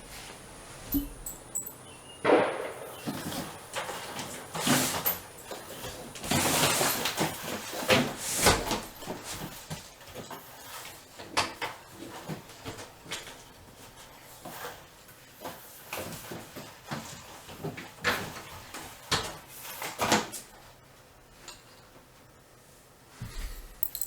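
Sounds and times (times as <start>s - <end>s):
distant gunshots: 2.2s - 3.7s.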